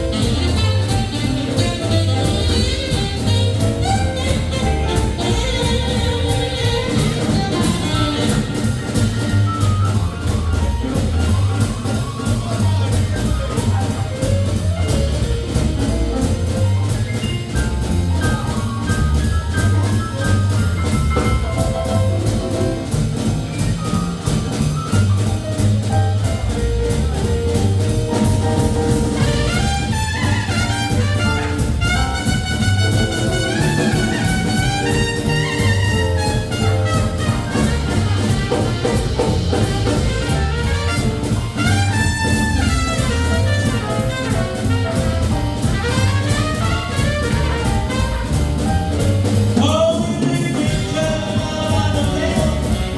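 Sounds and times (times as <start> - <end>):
trumpet and saxophone: 0.0 - 9.3, 28.5 - 48.7
swing band playing: 0.0 - 52.9.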